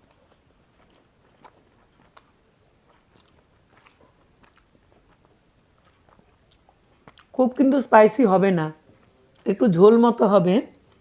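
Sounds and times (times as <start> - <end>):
person chewing food: 0.0 - 7.4, 8.8 - 9.5, 10.7 - 11.0.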